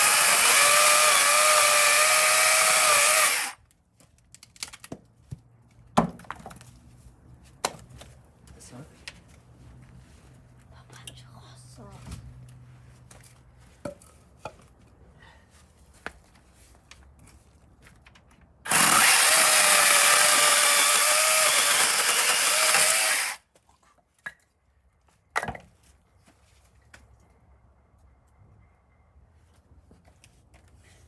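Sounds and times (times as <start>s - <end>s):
chainsaw cutting wood: 0.0s - 3.6s, 18.7s - 23.4s.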